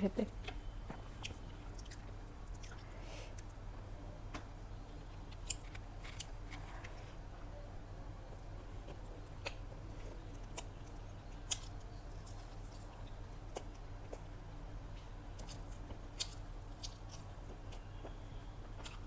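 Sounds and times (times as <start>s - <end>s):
steady low hum: 0.0s - 19.0s
mouth chewing with smacks: 0.4s - 3.6s, 8.6s - 14.3s.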